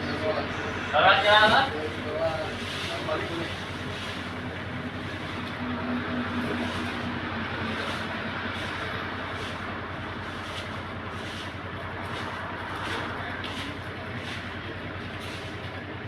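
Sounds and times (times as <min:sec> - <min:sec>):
steady vehicle noise: 0:00.0 - 0:16.0.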